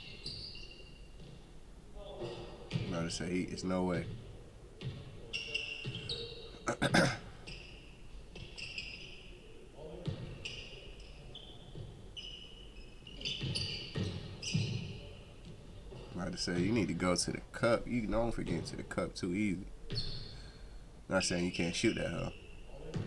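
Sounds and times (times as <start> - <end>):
sneakers squeaking: 0.0 - 19.1, 19.8 - 23.0
basketball bouncing on gym floor: 4.0 - 5.2, 10.0 - 10.6, 13.2 - 16.8, 19.9 - 20.4.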